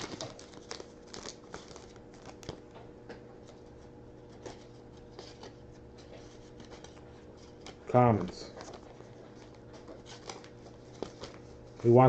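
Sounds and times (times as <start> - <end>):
wrapper crinkling and rustling: 0.0 - 2.6, 6.4 - 12.0.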